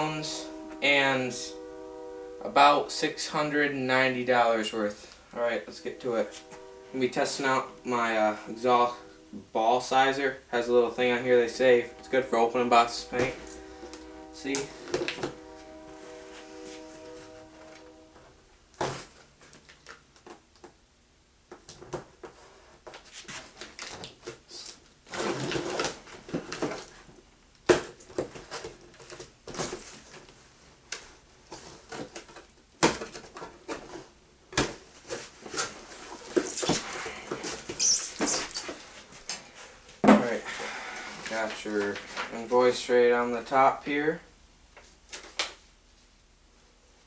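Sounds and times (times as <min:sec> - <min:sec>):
packing material crinkling: 0:35.5 - 0:38.9
tape being slit: 0:36.3 - 0:37.0, 0:37.7 - 0:38.8.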